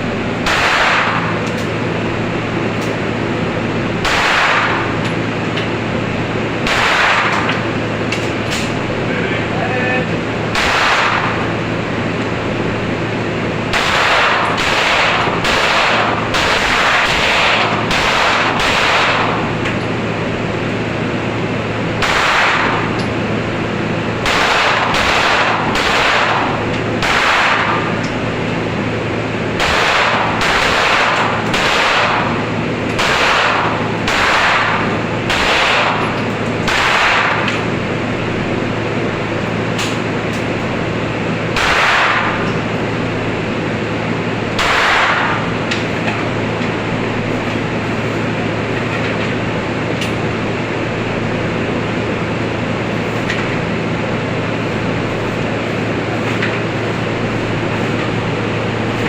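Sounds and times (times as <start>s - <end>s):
steady low hum: 0.0s - 59.0s
gunshots: 0.4s - 1.4s, 4.0s - 5.0s, 6.6s - 7.5s, 10.5s - 11.5s, 13.7s - 19.4s, 22.0s - 22.9s, 24.2s - 27.9s, 29.6s - 32.4s, 33.0s - 36.0s, 36.6s - 37.5s, 41.5s - 42.4s, 44.6s - 45.5s.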